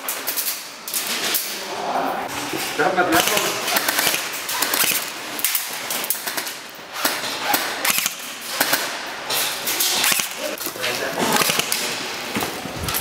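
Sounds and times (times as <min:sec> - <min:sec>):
airsoft guns firing bursts: 0:03.1 - 0:10.6, 0:11.2 - 0:12.2.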